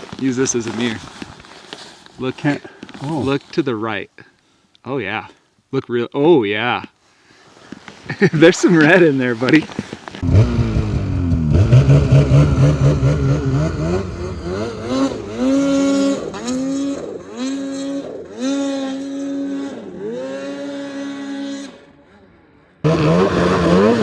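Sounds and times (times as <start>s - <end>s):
snowmobile engine revving: 8.8s - 24.0s.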